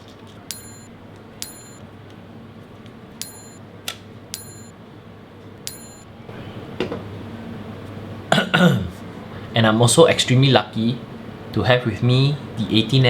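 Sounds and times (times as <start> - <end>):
sharp metallic clicks: 0.5 - 1.8, 3.2 - 3.6, 4.4 - 4.7, 5.6 - 6.1
steady low hum: 0.5 - 6.7.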